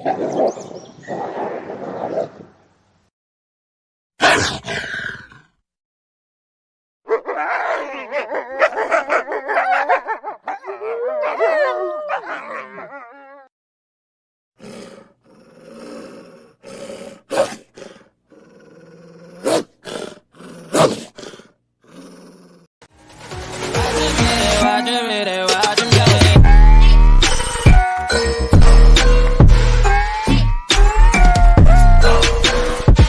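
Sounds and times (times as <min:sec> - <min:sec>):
wolf growling and snarling: 0:00.0 - 0:02.5, 0:04.2 - 0:05.6, 0:07.1 - 0:13.5, 0:14.6 - 0:22.7
wolf snapping and barking: 0:20.7 - 0:21.2.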